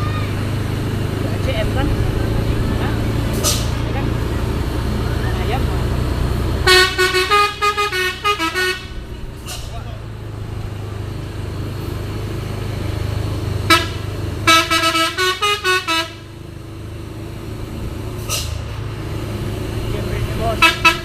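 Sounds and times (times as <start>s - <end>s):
truck diesel engine rumble: 0.0s - 21.0s
multi-note horn melody: 6.6s - 9.1s, 13.7s - 16.3s, 20.6s - 21.0s.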